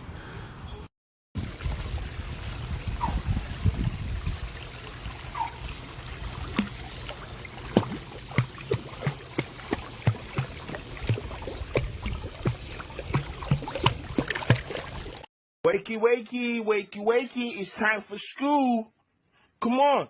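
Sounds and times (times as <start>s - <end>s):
small splashes or drips: 1.4s - 15.3s
water trickling: 1.4s - 15.3s.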